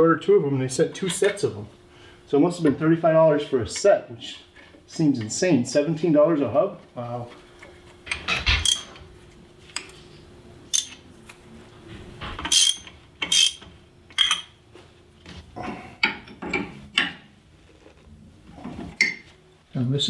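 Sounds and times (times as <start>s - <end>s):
metal tools clanking: 1.0s - 1.5s, 8.5s - 9.0s, 10.7s - 11.0s, 12.4s - 13.6s.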